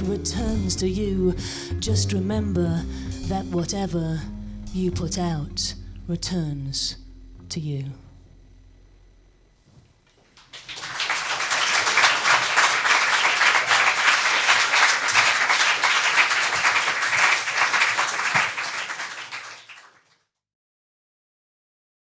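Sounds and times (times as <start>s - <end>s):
crowd applauding: 10.4s - 20.1s.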